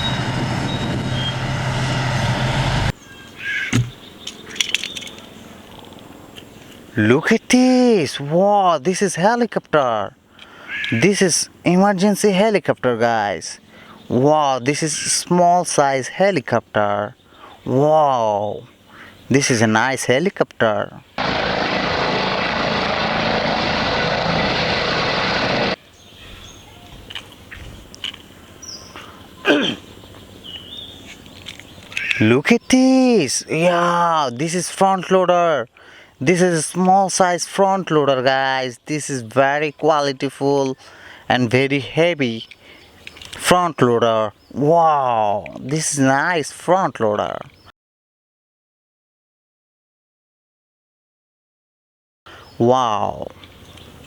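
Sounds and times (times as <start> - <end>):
truck engine running: 0.0 - 2.9, 21.2 - 25.8
short thump: 3.7 - 4.0.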